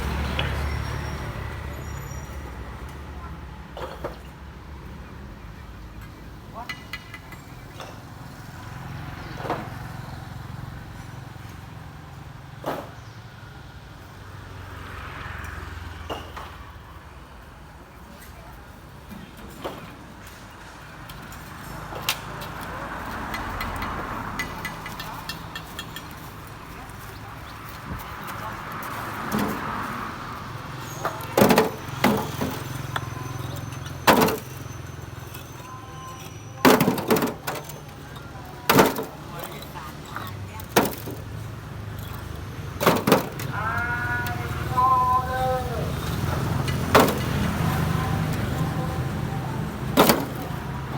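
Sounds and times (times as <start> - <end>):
low engine rumble: 24.2 - 50.9.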